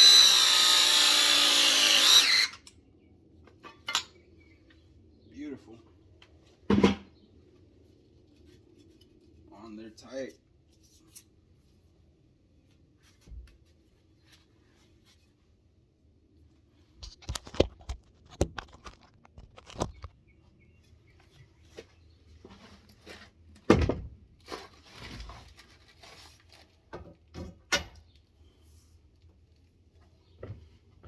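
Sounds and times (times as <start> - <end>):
brief rustle: 17.0 - 20.2.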